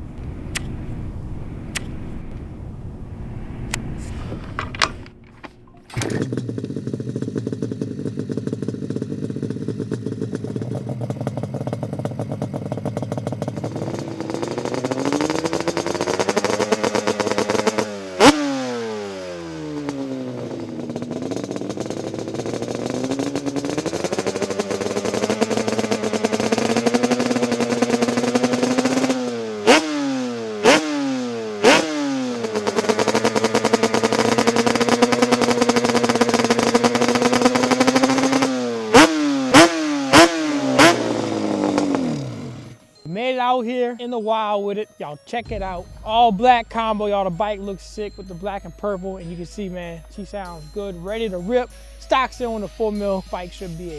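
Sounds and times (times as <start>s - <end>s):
loud sharp engine pops: 0.0s - 3.0s, 3.6s - 7.6s, 45.5s - 47.6s
motorbike engine revving: 0.0s - 43.1s.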